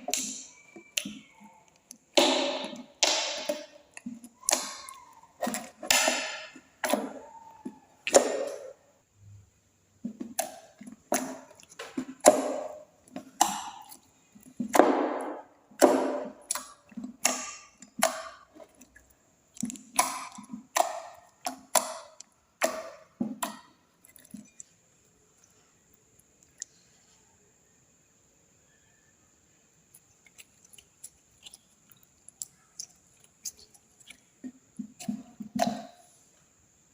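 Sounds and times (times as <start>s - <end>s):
slime squished by hand: 0.0s - 8.8s, 10.3s - 24.8s, 29.9s - 35.9s.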